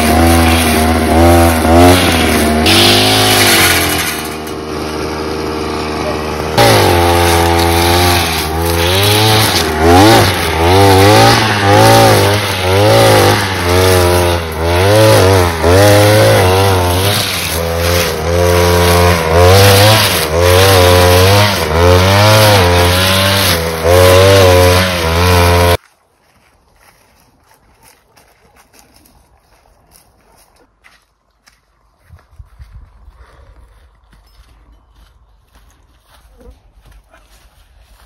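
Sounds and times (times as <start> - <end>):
two-stroke chainsaw running: 0.0 - 25.8.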